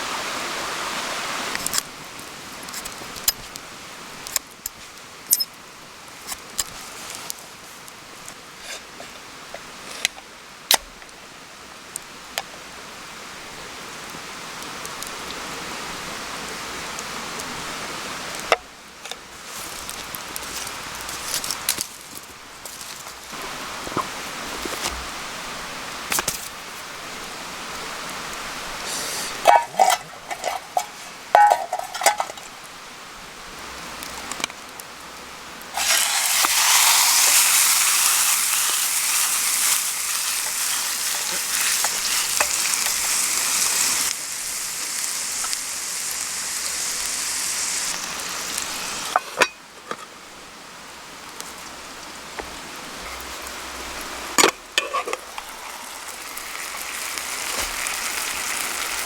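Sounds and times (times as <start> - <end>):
food sizzling in hot pan: 28.8 - 32.7, 35.7 - 49.6, 54.0 - 59.0
metal cookware clinking: 29.4 - 32.5, 38.2 - 43.8, 54.4 - 56.7.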